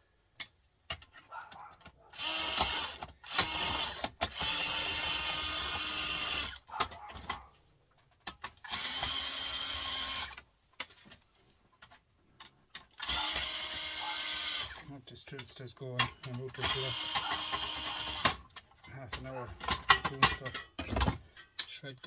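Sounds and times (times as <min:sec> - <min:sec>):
clicks of parts and screws: 0:00.4 - 0:21.8
power drill unscrewing screws: 0:01.5 - 0:07.4, 0:08.2 - 0:11.0, 0:12.8 - 0:21.6.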